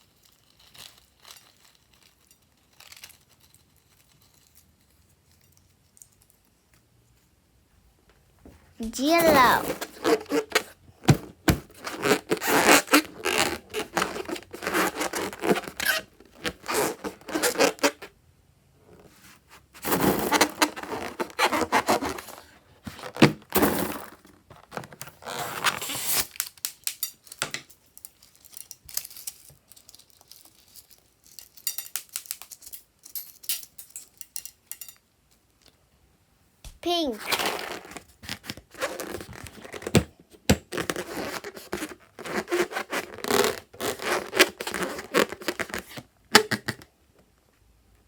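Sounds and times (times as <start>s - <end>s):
slime and balloons scraping: 8.8s - 18.0s, 40.7s - 46.0s.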